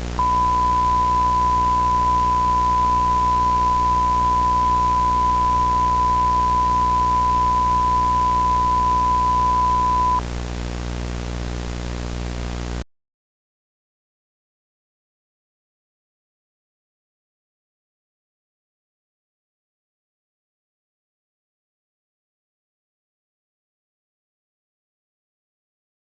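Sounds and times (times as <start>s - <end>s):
low hum: 0.0s - 10.2s
steady electronic tone: 0.0s - 10.2s.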